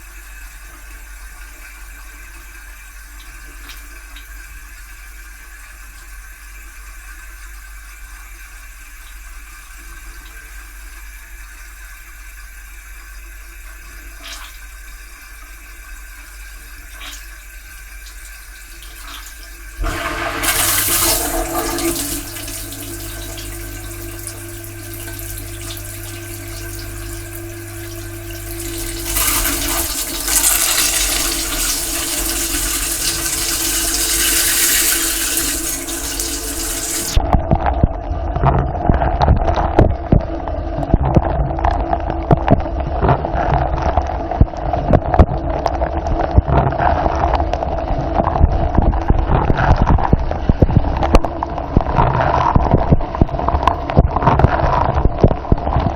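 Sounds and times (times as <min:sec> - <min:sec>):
water spraying over racks: 0:18.2 - 0:37.2
pump humming: 0:19.6 - 0:37.3.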